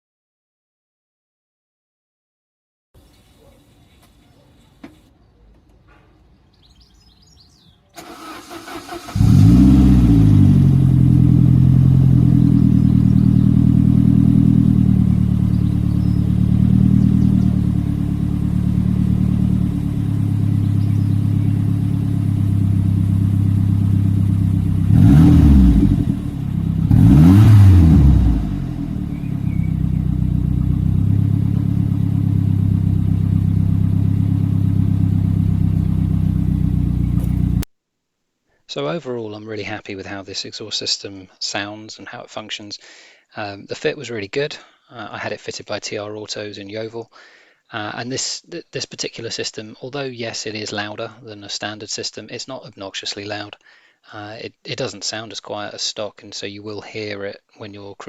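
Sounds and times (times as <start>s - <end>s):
car engine cranking: 8.0s - 37.6s
car engine idling: 8.0s - 37.6s
engine throttle blips: 8.0s - 37.6s.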